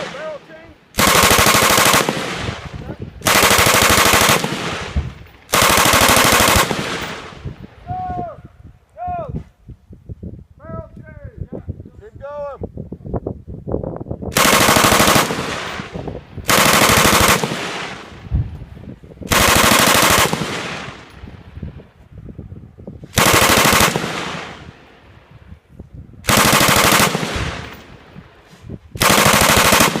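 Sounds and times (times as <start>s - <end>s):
machine gun bursts with echo: 1.0s - 2.6s, 3.2s - 7.4s, 14.3s - 18.1s, 19.3s - 21.1s, 23.2s - 24.7s, 26.3s - 27.8s, 29.0s - 30.0s.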